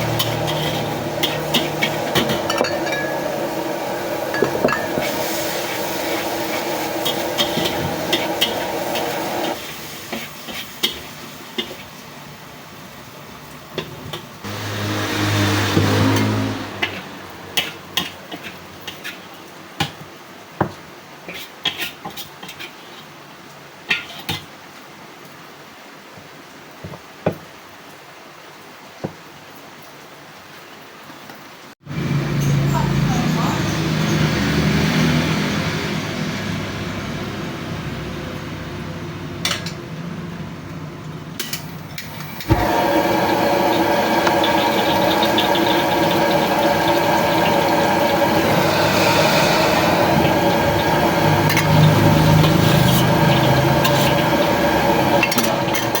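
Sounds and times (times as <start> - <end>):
metal cookware clanking: 0.0 - 9.6, 41.4 - 56.0
steady cooking noise with crackle: 0.0 - 56.0
utensils clinking on metal: 0.1 - 3.5
rushing noise: 14.4 - 18.0, 42.6 - 56.0.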